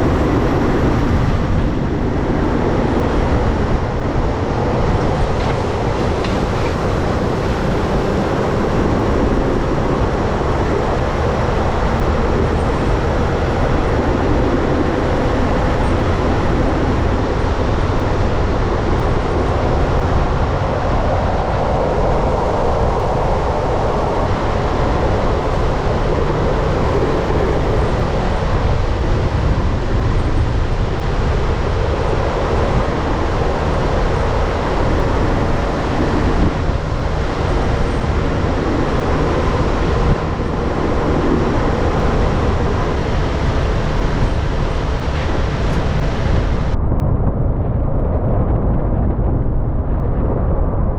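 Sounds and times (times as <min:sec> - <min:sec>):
diesel truck engine rumbling: 0:00.0 - 0:46.8.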